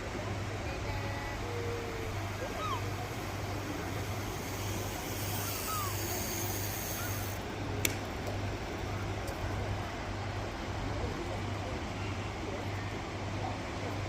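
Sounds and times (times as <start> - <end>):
road traffic: 0.0 - 14.0
faint chirps: 5.3 - 7.3.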